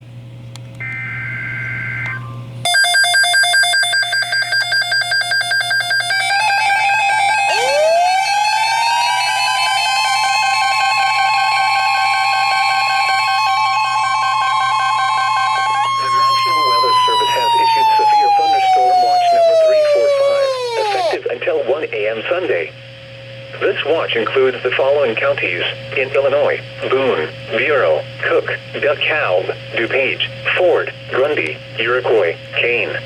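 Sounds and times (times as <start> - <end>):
pulsing alarm tone: 0.8 - 21.2
rising siren-like tone: 6.0 - 21.2.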